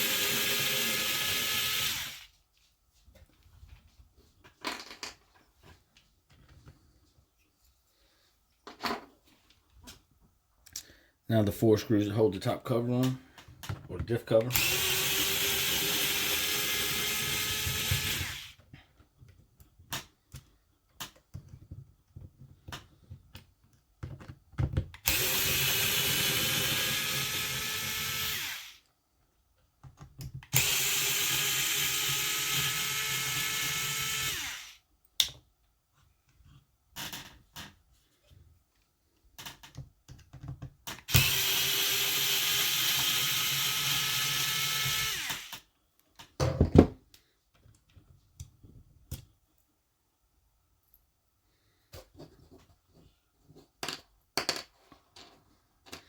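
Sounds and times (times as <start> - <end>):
power screwdriver running: 0.0 - 2.2, 14.5 - 18.5, 25.0 - 28.8, 30.5 - 34.8, 41.1 - 45.6
clicks and taps of parts: 39.4 - 41.1.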